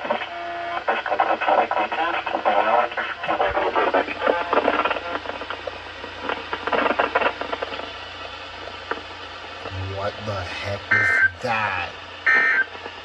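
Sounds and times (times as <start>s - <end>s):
broken-up radio broadcast: 9.7s - 12.0s
radio static hiss: 9.7s - 12.0s.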